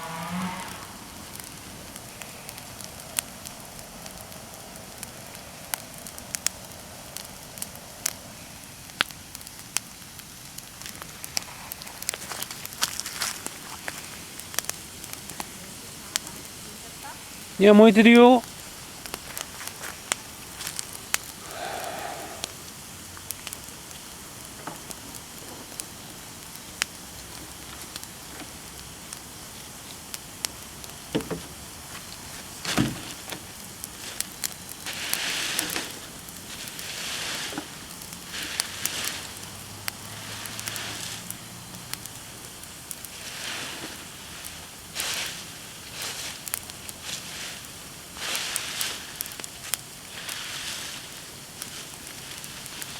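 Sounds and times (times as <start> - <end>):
bonfire crackling and popping: 0.0 - 52.9
fire hiss: 0.0 - 52.9.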